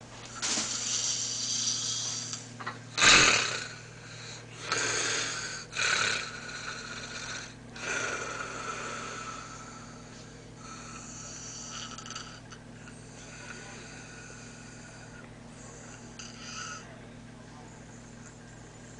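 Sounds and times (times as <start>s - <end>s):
man snoring loudly: 3.0s - 10.0s, 10.6s - 12.6s, 15.8s - 16.9s.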